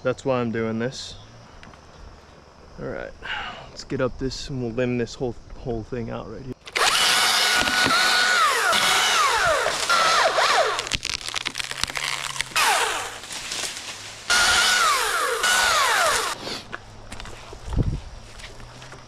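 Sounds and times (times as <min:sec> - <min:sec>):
power tool motor whining: 0:06.6 - 0:11.0, 0:11.8 - 0:13.4, 0:14.3 - 0:16.4.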